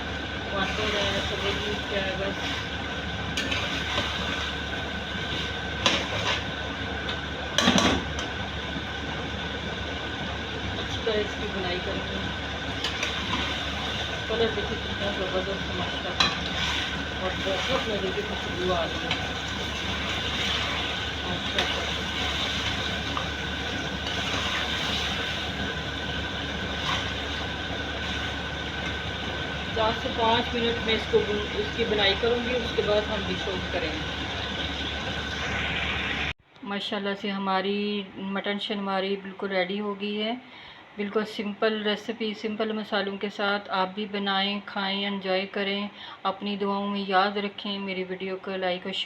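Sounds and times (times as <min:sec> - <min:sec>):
metal spoon scraping a pan: 0:03.4 - 0:04.6, 0:05.2 - 0:06.5, 0:16.1 - 0:18.3, 0:20.0 - 0:22.8
meat sizzling: 0:12.4 - 0:29.8.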